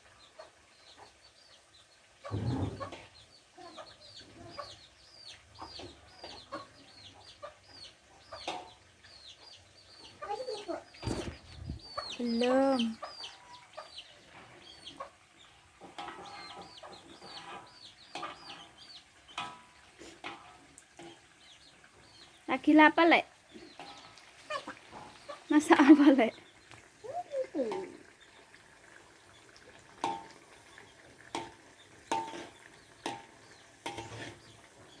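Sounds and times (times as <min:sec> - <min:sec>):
chicks cheeping: 0:00.3 - 0:08.5, 0:09.1 - 0:15.1, 0:16.2 - 0:19.4
utensil knocking against frying pan: 0:30.0 - 0:30.4, 0:31.3 - 0:34.3.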